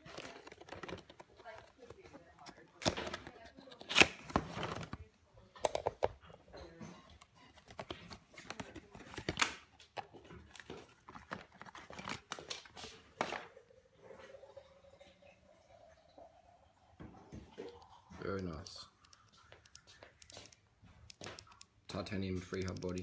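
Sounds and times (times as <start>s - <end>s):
packaging rustling and crinkling: 0.0s - 5.1s, 7.4s - 13.4s.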